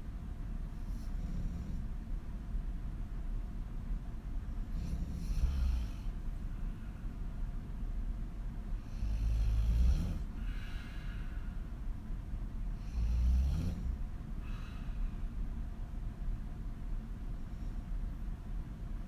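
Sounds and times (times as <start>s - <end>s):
woman snoring: 4.8s - 6.1s, 8.9s - 11.0s, 12.8s - 14.6s.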